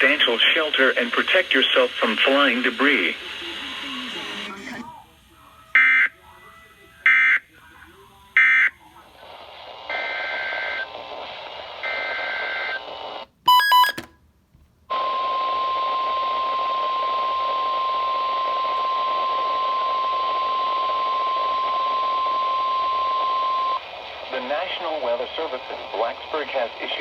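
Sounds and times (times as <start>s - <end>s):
radio hiss: 0.0s - 13.3s, 14.9s - 27.0s
steady warning alarm tone: 5.8s - 6.2s
multi-tone beep: 13.5s - 14.0s.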